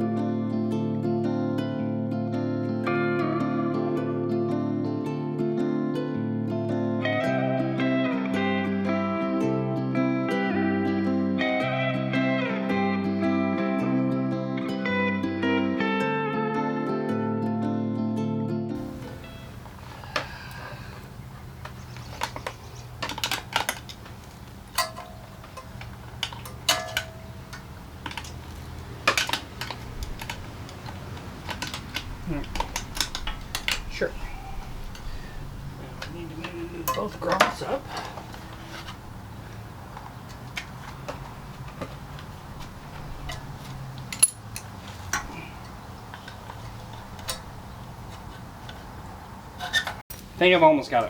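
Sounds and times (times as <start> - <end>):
hand tools clicking and tapping: 18.8 - 50.4
small metal clicks and clinks: 21.6 - 33.9, 43.2 - 45.8
struck metal ringing: 24.8 - 28.4.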